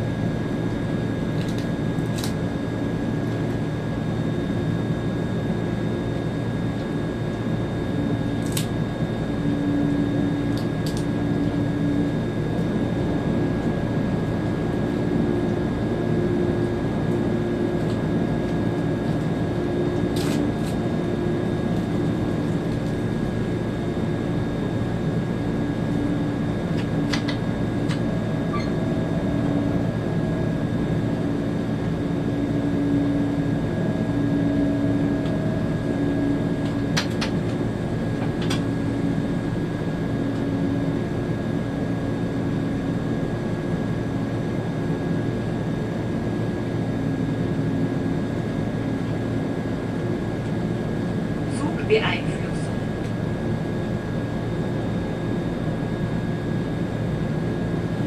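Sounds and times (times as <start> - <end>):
humming tones: 9.1 - 39.3.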